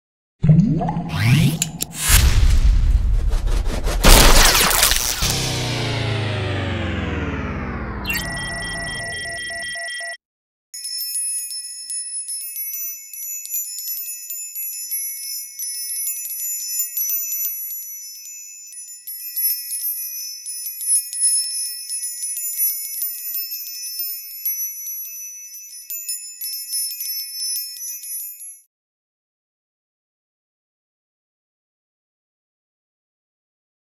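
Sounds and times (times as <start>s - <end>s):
wind chimes ringing: 10.8s - 28.7s.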